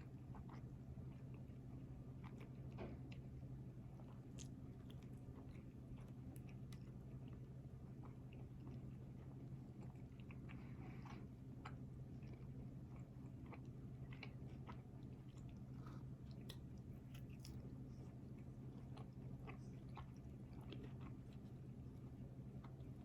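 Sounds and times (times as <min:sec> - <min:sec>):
low steady hum: 0:00.0 - 0:23.0
person chewing food: 0:00.0 - 0:23.0.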